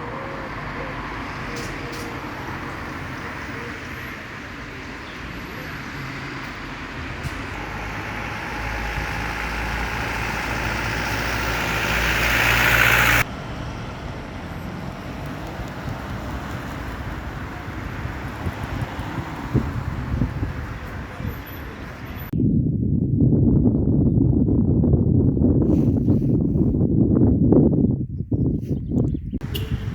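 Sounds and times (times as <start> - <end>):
traffic noise: 0.0 - 22.4, 29.4 - 29.9
vehicle approaching with rumble: 0.0 - 22.4.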